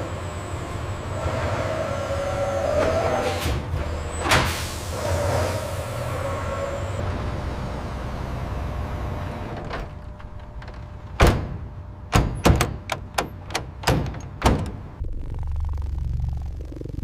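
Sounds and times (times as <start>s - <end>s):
machine hum: 5.7s - 17.0s
sharp knocks: 11.2s - 15.0s.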